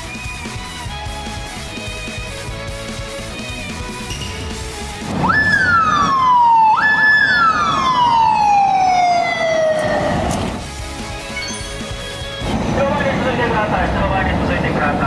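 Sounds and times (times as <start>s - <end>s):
motorcycle siren wailing: 5.0s - 10.7s.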